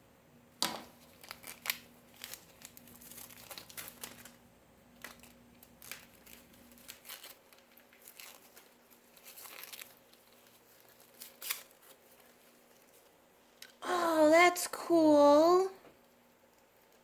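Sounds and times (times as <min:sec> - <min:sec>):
packaging rustling and tearing: 0:00.8 - 0:04.4, 0:05.0 - 0:13.1.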